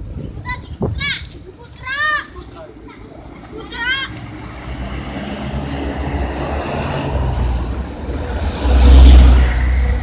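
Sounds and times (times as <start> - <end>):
bus engine rumble: 0.0 - 10.0
thin high whine: 8.3 - 10.0.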